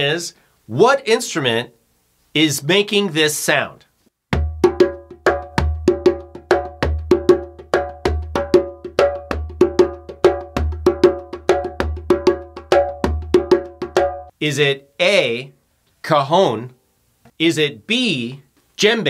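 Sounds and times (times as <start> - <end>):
djembe drumming: 4.3 - 14.3.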